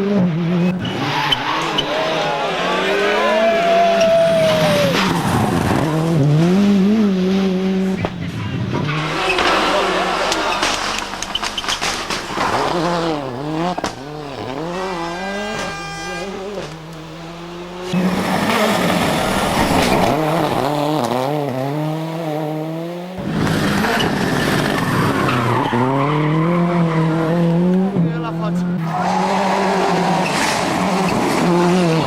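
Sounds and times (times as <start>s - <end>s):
rally engine revving hard: 0.0s - 32.0s.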